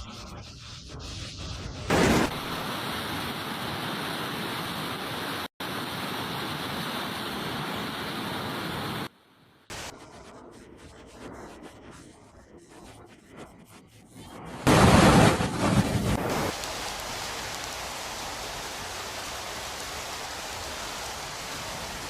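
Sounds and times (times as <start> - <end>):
floodwater rushing: 14.7 - 22.0.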